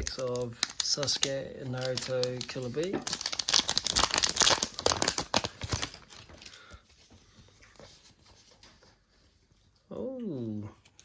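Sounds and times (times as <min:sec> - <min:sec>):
wrapper crinkling and tearing: 0:00.0 - 0:07.0
cards rustling: 0:00.0 - 0:09.0.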